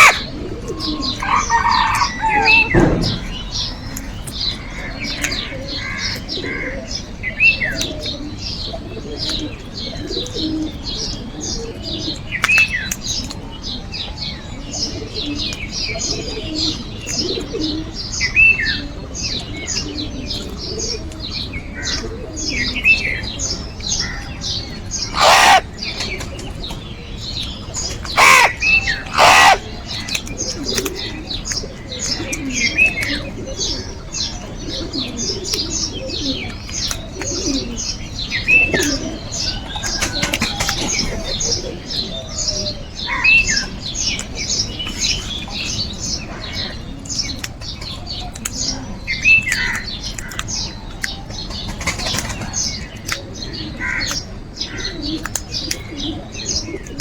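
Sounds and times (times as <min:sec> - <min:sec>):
crow cawing: 0:00.0 - 0:00.3, 0:00.9 - 0:03.3, 0:25.1 - 0:25.6, 0:28.2 - 0:29.6
small birds chirping: 0:00.0 - 0:57.0.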